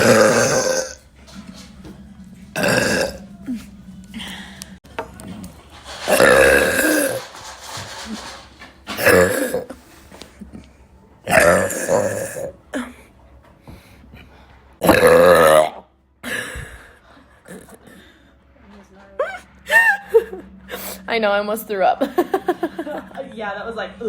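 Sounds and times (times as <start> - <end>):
woman burping: 0.0 - 1.0, 2.6 - 3.2, 9.0 - 9.8, 11.3 - 12.9, 14.8 - 16.7.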